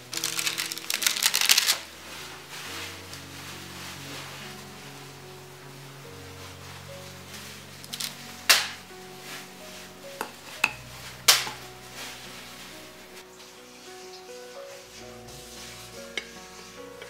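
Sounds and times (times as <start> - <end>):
dishes and utensils clinking: 10.2 - 11.6.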